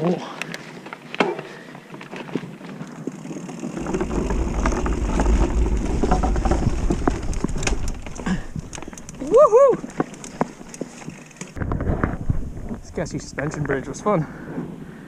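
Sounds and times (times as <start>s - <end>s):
planks clattering under bike tyres: 2.0s - 12.2s
heavy low rumble: 3.8s - 9.4s.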